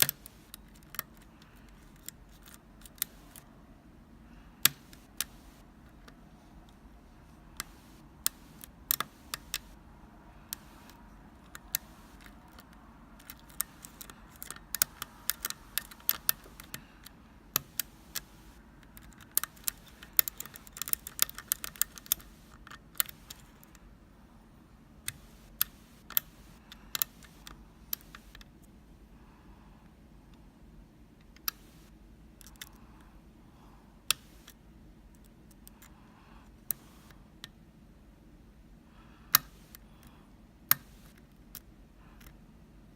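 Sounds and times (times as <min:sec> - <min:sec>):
lock pick clicking in lock: 0:00.0 - 0:03.4, 0:10.5 - 0:16.8, 0:17.6 - 0:23.8.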